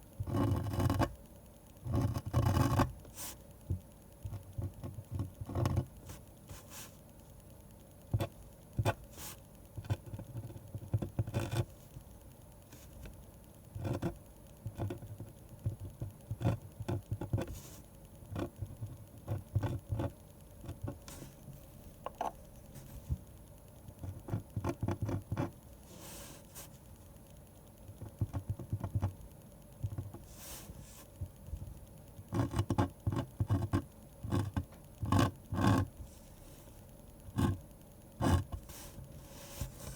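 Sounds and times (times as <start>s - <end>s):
pencil strokes on paper: 3.1s - 3.4s, 6.0s - 7.0s, 8.9s - 9.5s, 17.4s - 18.5s, 25.8s - 26.9s, 30.2s - 31.3s, 38.2s - 39.9s.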